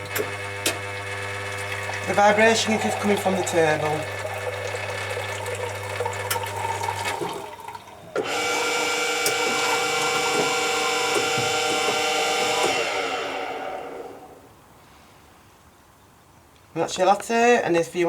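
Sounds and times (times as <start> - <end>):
coffee machine whirring and gurgling: 0.0 - 14.4
coffee machine pump hum: 0.0 - 14.5.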